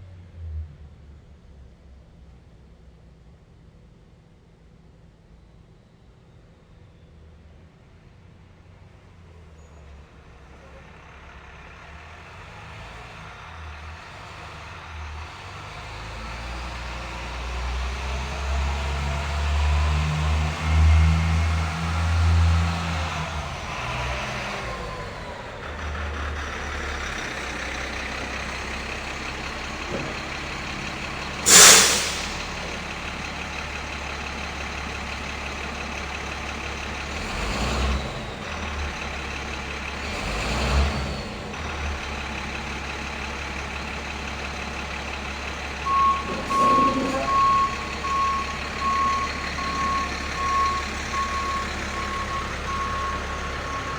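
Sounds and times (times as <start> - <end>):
truck engine idling: 9.9 - 53.9
air brake hiss: 31.4 - 32.8
reversing alarm beeping: 45.8 - 53.9.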